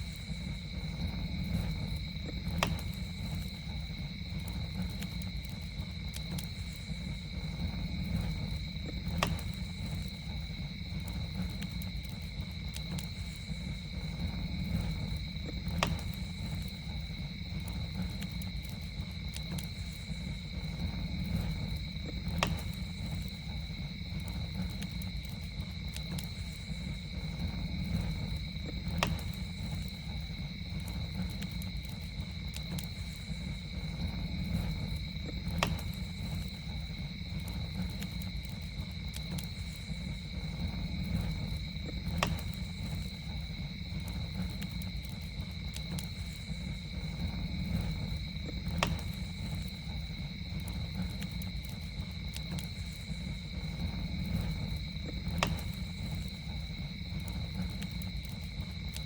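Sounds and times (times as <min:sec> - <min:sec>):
campfire crackling and popping: 0:00.0 - 0:59.0
insect drone: 0:00.0 - 0:59.0.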